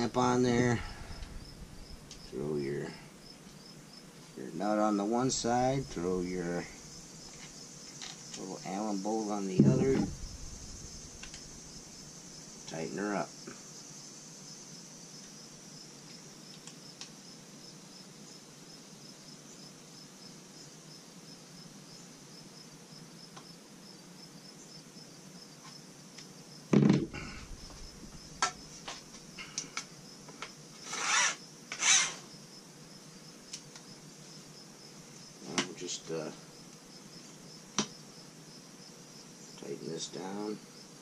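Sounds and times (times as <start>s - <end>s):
room hum: 0.0s - 3.4s, 4.6s - 7.7s, 9.6s - 12.5s
heavy knock: 9.5s - 11.0s
short scraping rasps: 30.8s - 32.3s.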